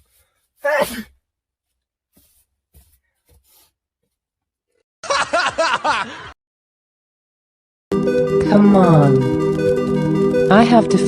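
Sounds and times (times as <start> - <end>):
person laughing: 5.0 - 6.3.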